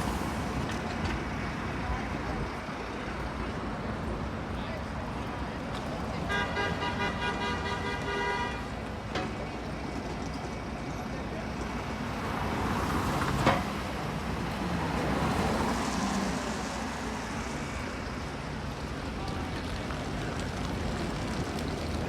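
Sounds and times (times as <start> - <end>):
street traffic: 0.0 - 22.0
vehicle horn: 6.2 - 8.7.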